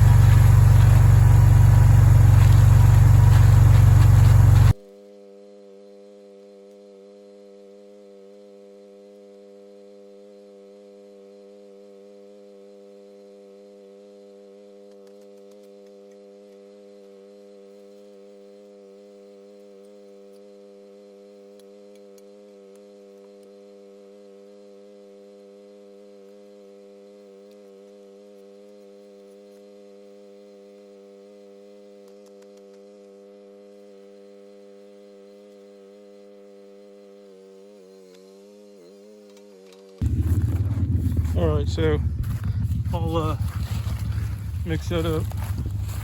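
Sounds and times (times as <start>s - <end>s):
skid steer engine droning: 0.0s - 4.8s, 38.4s - 46.0s.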